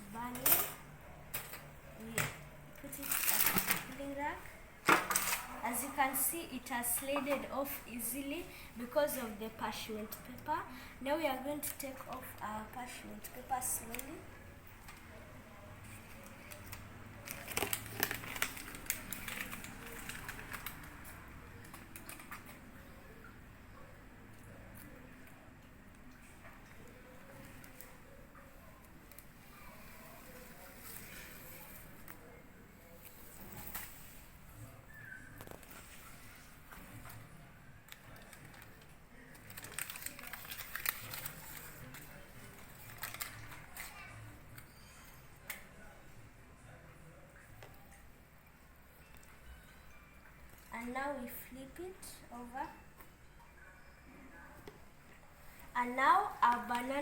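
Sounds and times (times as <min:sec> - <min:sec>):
parchment paper crinkling: 0:02.8 - 0:05.8, 0:15.8 - 0:22.7, 0:37.9 - 0:45.6.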